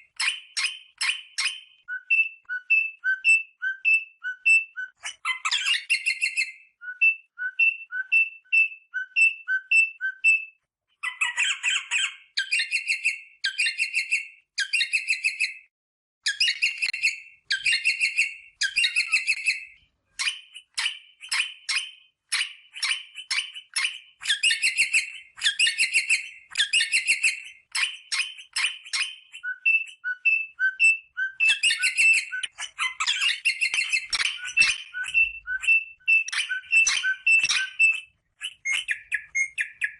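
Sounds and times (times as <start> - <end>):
parrot rapid chattering: 11.0 - 13.6, 31.4 - 39.9
parrot whistling calls: 16.3 - 39.9.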